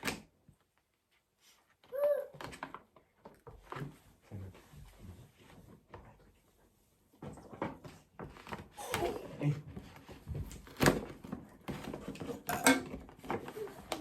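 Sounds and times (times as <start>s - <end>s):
gift wrapping rustling: 0.6s - 14.0s.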